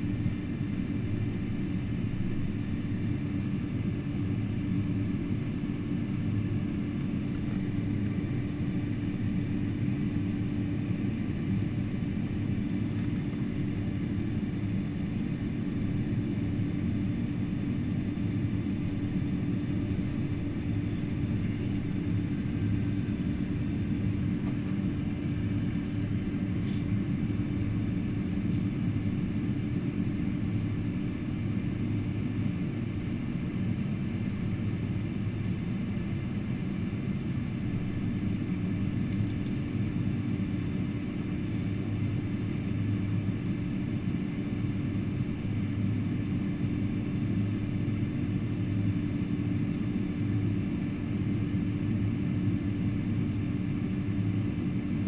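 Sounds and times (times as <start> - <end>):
airplane cabin low rumble: 0.0 - 55.0
constant hum: 0.0 - 55.0.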